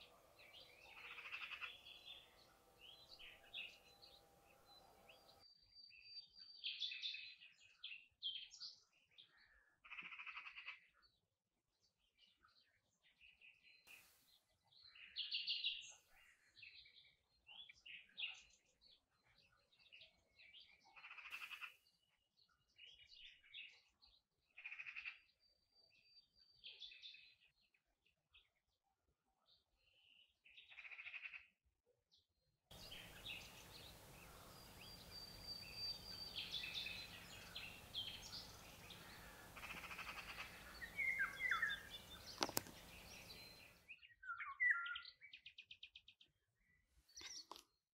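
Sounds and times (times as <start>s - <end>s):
songbirds chirping: 0.0s - 28.6s, 32.7s - 47.9s
low hiss: 32.8s - 43.6s.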